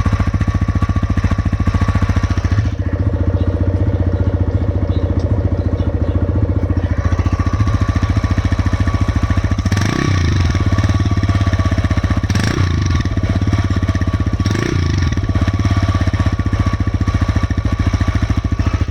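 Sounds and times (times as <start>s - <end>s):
motorcycle engine idling with knock: 0.0s - 18.9s
motorcycle throttle blips: 0.0s - 18.9s.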